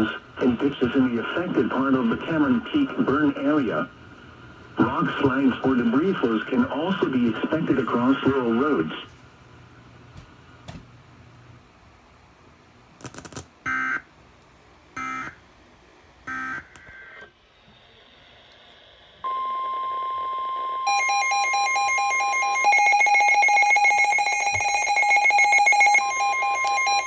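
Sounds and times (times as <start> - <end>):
alarm beeping rapidly: 20.9 - 27.0.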